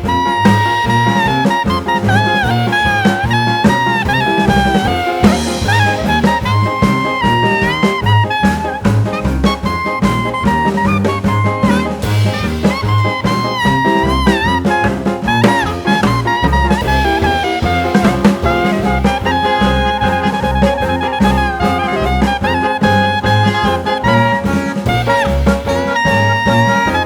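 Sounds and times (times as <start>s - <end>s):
swing jazz with brass horns: 0.0s - 27.0s.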